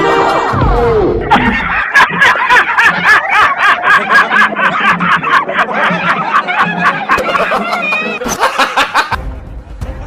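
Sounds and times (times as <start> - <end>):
high-pitched rapid laughter: 1.2 - 9.2.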